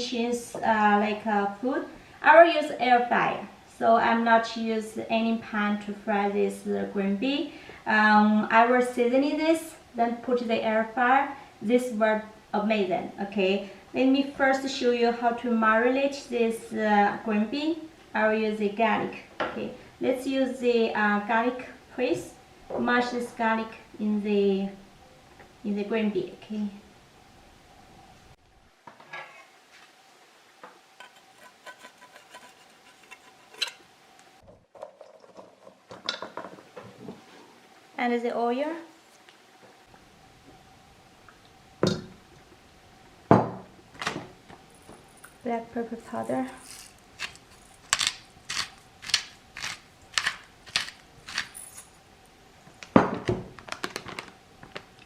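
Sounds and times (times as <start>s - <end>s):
pepper shaker clicking: 46.1s - 51.9s.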